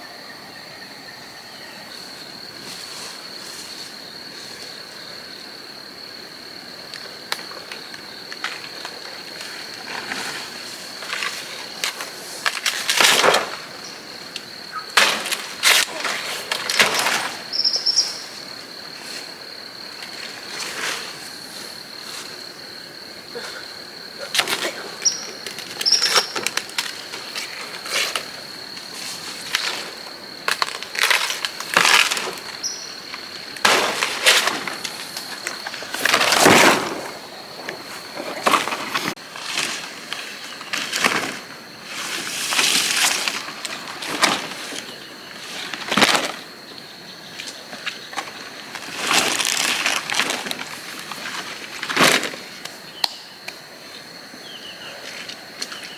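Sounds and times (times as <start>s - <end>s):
insect buzzing: 13.2s - 41.0s
scraping and crunching: 24.4s - 44.9s.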